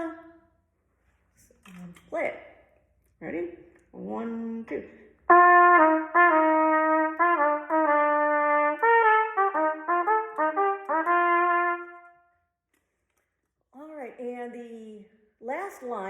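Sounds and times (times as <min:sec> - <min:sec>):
solo trumpet playing: 0:05.2 - 0:12.4.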